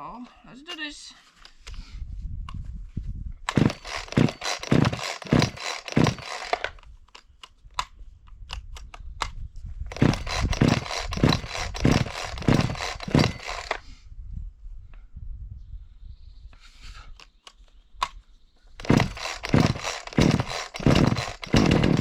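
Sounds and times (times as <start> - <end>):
chainsaw starter cord pulls: 3.5 - 7.9, 9.9 - 13.9, 18.8 - 22.0.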